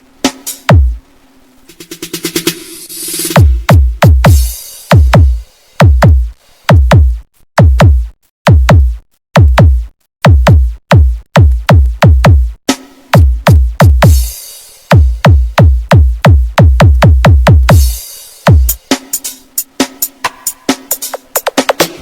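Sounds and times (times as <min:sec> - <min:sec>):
drum machine kick hits: 0:00.2 - 0:01.0, 0:01.7 - 0:22.0
hissing noise sweep: 0:01.6 - 0:03.7.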